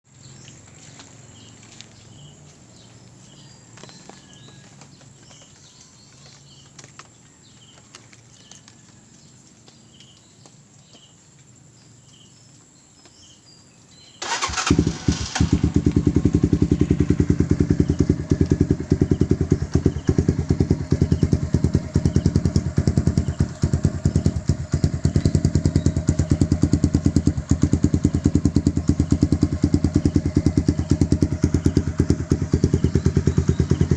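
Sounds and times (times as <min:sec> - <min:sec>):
motorcycle engine starting: 0:14.1 - 0:33.9
motorcycle engine idling: 0:14.2 - 0:33.9.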